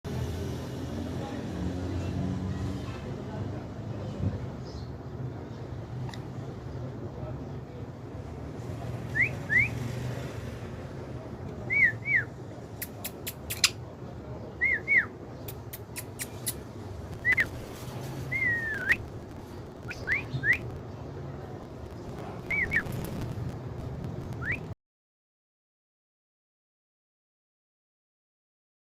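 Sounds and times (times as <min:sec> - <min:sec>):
sharp clicks: 0:12.8 - 0:13.8
bird whistled calls: 0:14.6 - 0:15.1, 0:17.2 - 0:17.5, 0:18.3 - 0:19.0, 0:19.9 - 0:20.6, 0:22.5 - 0:22.9.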